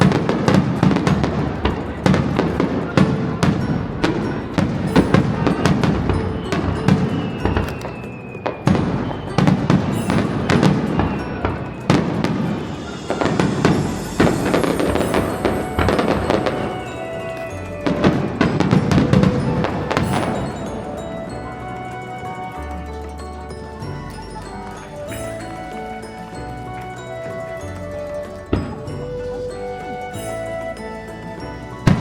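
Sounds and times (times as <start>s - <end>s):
fireworks bangs and crackles: 0.0s - 32.0s
music playing: 0.0s - 32.0s.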